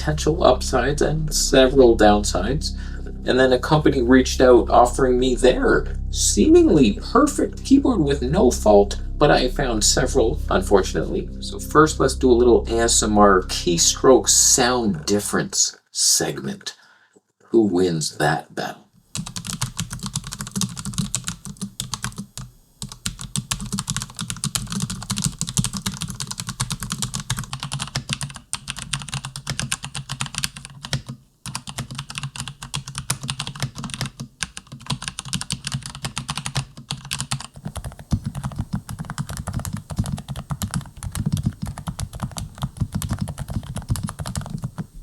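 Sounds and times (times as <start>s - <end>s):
fast typing on mechanical keyboards: 19.2s - 44.9s.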